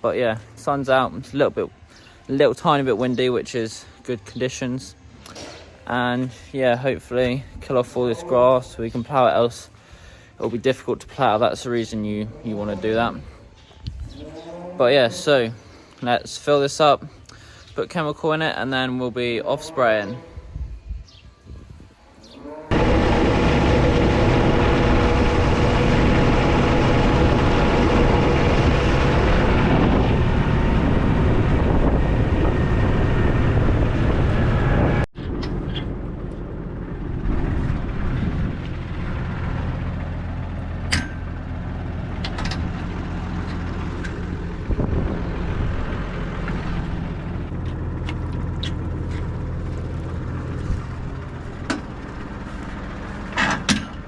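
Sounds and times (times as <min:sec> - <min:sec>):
tractor engine running: 0:22.7 - 0:54.0.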